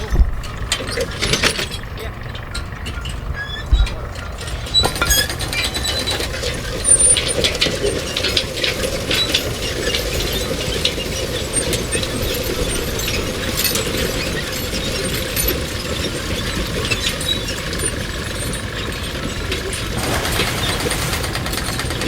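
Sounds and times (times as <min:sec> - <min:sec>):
irregular clicks and rattles: 0:00.0 - 0:22.0
machinery running: 0:19.6 - 0:22.0.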